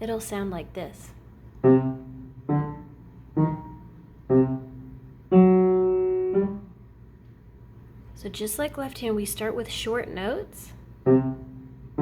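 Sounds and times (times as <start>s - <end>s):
piano notes: 1.6s - 6.9s, 11.0s - 12.0s.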